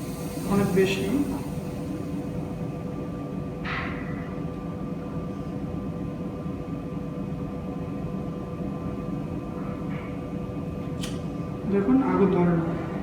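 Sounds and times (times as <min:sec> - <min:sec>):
gas rushing from hose: 0:00.0 - 0:02.7.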